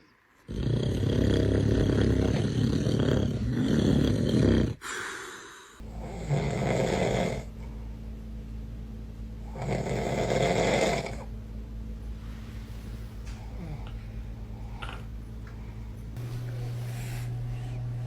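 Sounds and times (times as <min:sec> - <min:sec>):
low steady hum: 0:00.0 - 0:18.0
man snoring loudly: 0:00.5 - 0:05.0, 0:05.8 - 0:07.5, 0:09.5 - 0:11.3.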